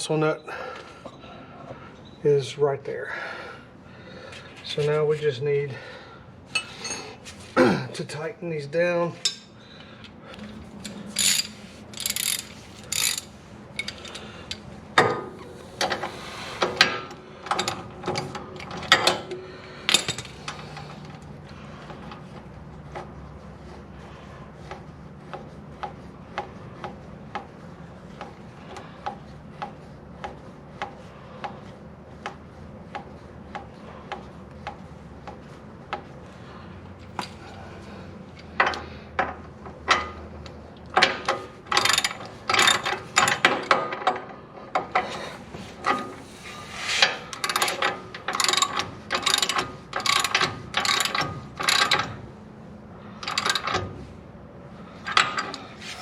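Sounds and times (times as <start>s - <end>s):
socket ratchet clicking: 10.8s - 14.6s.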